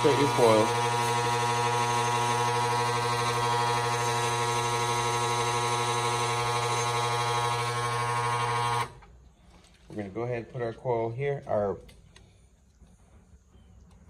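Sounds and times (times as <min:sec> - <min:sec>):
electric motor buzzing hum: 0:00.0 - 0:09.0.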